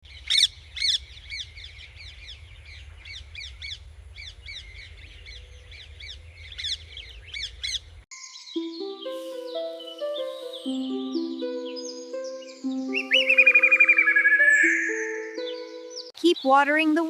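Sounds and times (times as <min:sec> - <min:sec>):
birds harsh calls: 0:11.6 - 0:16.5.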